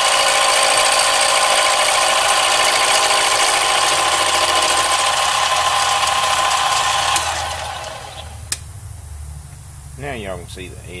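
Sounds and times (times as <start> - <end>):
power tool cutting metal: 0.0 - 8.5.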